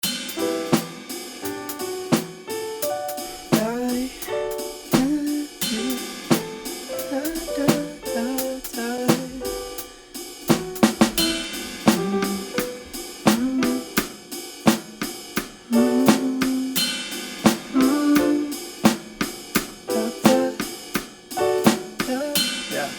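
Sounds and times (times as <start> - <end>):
hip-hop instrumental beat: 1.8 - 14.0, 15.7 - 16.9, 17.5 - 18.8, 19.9 - 20.7, 21.4 - 22.9.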